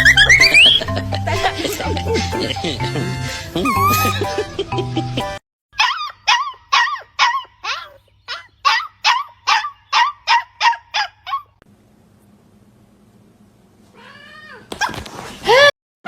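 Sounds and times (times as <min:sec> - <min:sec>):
dog yapping: 0:05.8 - 0:11.6.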